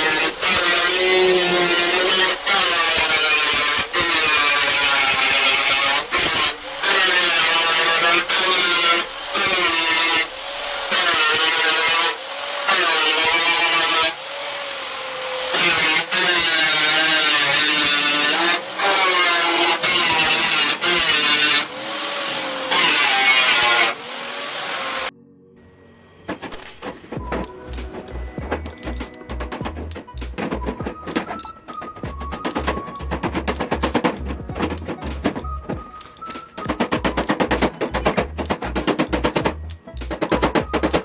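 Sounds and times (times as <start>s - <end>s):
power tool motor whining on sheet metal: 0.0s - 25.1s.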